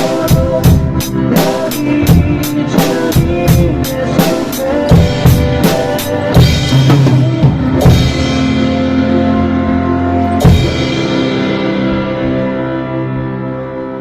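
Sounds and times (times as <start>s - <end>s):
held closing chord of worship song: 0.0s - 14.0s
drum hits: 0.3s - 12.4s.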